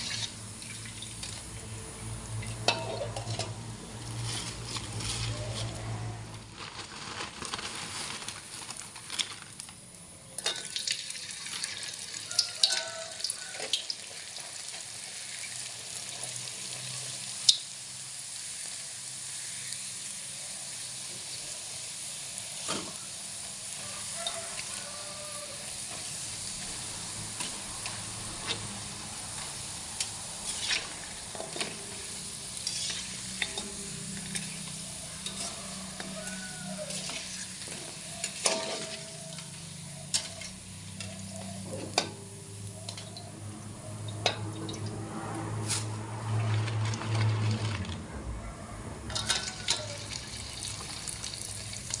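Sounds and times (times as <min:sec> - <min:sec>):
utensil scraping a pan: 0:00.0 - 0:00.5, 0:02.4 - 0:06.3, 0:25.5 - 0:43.1
food sizzling in hot oil: 0:00.0 - 0:06.6, 0:10.4 - 0:46.9, 0:49.1 - 0:52.0.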